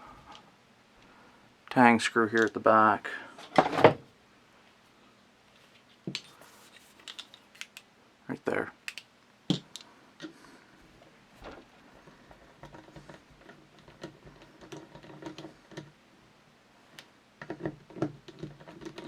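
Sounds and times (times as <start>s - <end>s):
screw clicking and creaking: 12.3s - 15.9s, 17.0s - 19.0s.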